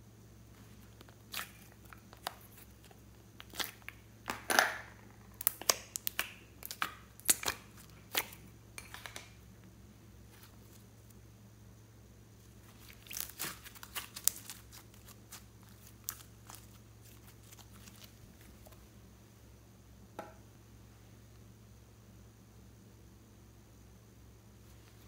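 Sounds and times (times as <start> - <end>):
slime clicking and crackling: 0.9 - 9.4, 12.7 - 18.2.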